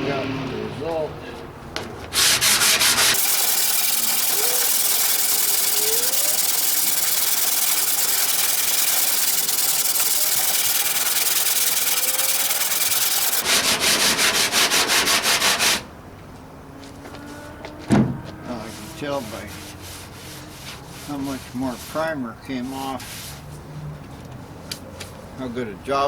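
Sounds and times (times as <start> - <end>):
sanding steel back and forth: 2.1 - 15.9, 18.6 - 23.5.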